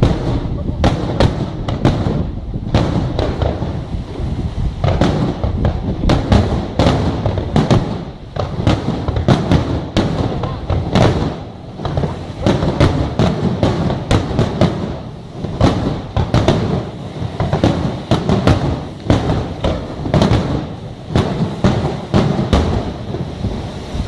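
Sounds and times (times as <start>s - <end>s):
fireworks bangs and crackles: 0.0s - 24.0s
low rumble of explosions: 0.0s - 24.0s.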